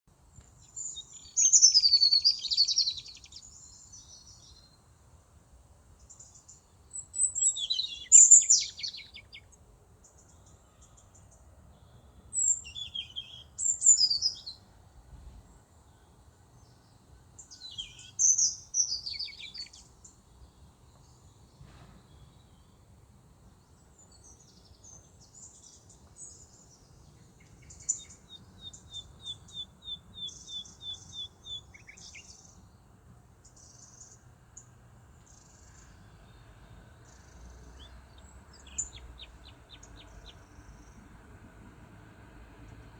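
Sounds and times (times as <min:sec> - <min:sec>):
songbird warbling with trill: 0:07.2 - 0:09.4, 0:17.5 - 0:19.8.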